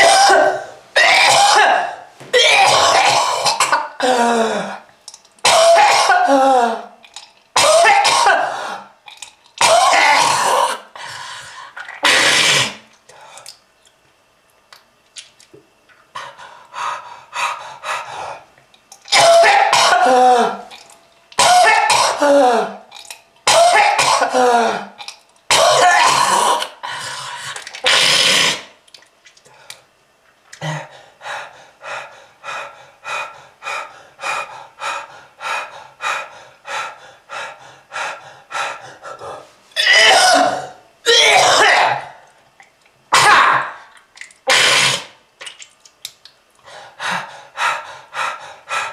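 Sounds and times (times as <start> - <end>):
person coughing hard: 0.0 - 4.8, 5.4 - 6.9, 7.6 - 8.7, 9.6 - 10.8, 12.0 - 12.8, 19.1 - 20.7, 21.4 - 22.8, 23.4 - 26.8, 39.8 - 42.2, 43.1 - 43.8, 44.5 - 45.1.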